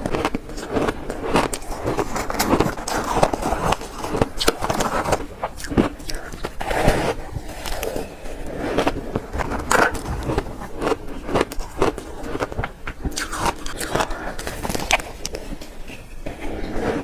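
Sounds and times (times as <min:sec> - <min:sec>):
shaved ice being crunched: 0:13.1 - 0:15.4.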